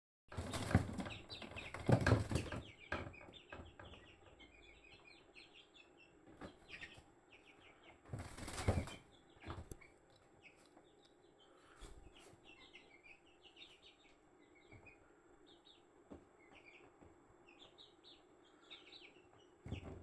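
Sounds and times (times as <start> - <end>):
wing flapping and scuffling: 0.3 - 3.9, 8.1 - 9.8
baby chick peeping: 0.3 - 20.0.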